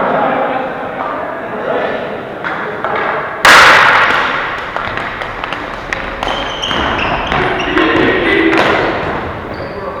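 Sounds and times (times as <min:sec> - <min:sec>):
sticks and ball clacking: 0:02.9 - 0:09.5
players shouting: 0:03.6 - 0:10.0
short high squeaks: 0:06.3 - 0:07.8.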